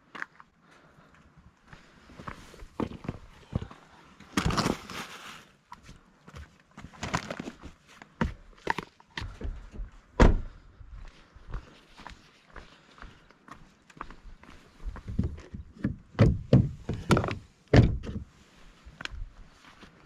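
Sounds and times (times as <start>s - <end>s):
heavy thump: 10.2s - 10.6s
knocks and clunks: 15.1s - 18.3s.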